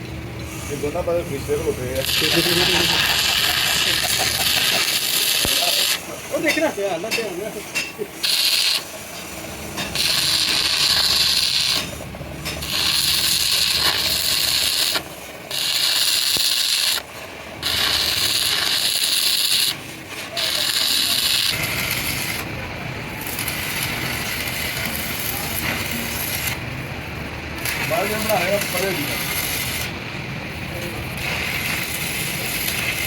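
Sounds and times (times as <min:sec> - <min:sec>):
mechanical tool rasping: 0:02.0 - 0:06.0, 0:07.8 - 0:09.0, 0:09.8 - 0:22.5.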